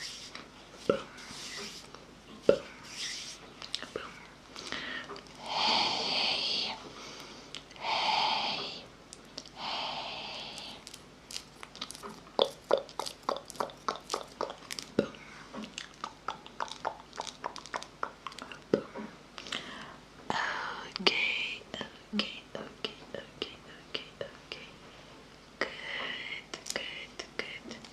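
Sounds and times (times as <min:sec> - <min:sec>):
breathy hisses: 0:04.0 - 0:08.9, 0:09.6 - 0:10.9
wet tongue and lip clicks: 0:11.7 - 0:18.9.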